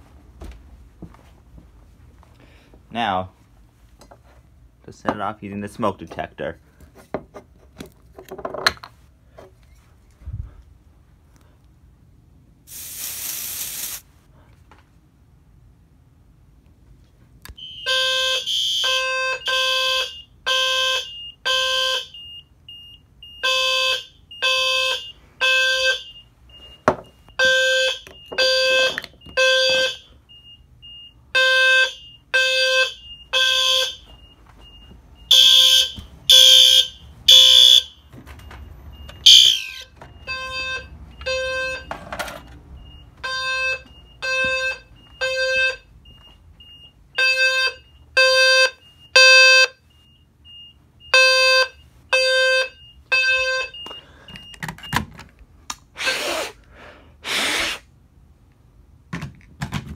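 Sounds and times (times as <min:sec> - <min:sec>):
fire alarm horns pulsing: 0:17.5 - 0:38.1, 0:38.9 - 0:54.6.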